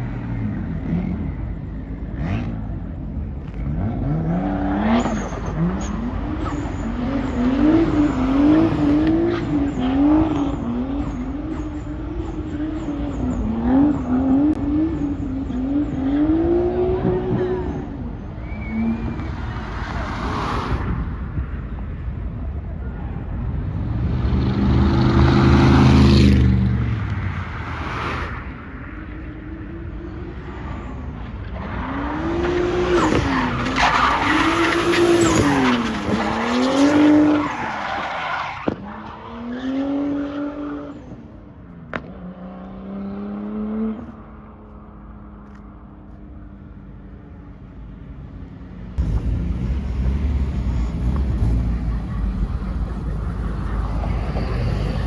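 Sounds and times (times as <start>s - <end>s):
car engine revving: 49.0s - 55.0s.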